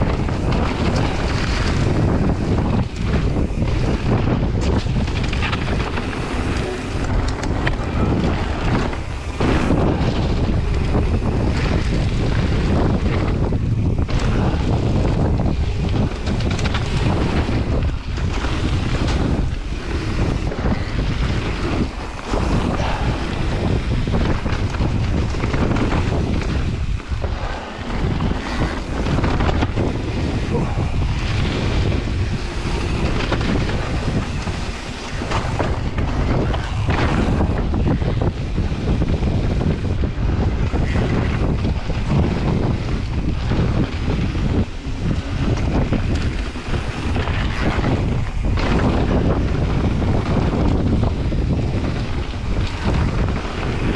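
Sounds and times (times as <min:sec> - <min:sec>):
bike knocks and rattles: 0:00.0 - 0:53.9
wind rushing over microphone: 0:00.0 - 0:53.9.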